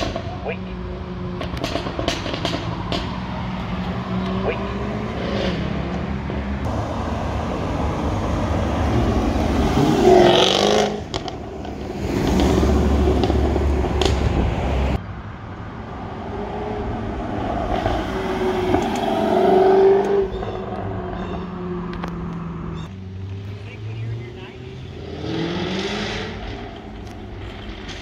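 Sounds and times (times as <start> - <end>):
car engine accelerating hard: 21.6 - 28.0.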